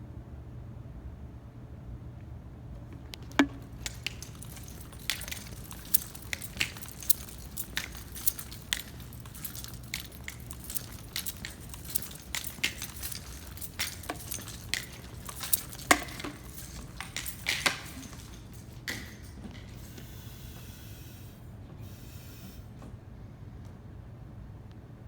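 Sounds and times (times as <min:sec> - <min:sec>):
sharp clicks and light knocks: 0:02.8 - 0:19.8
faint clinks: 0:02.8 - 0:21.1.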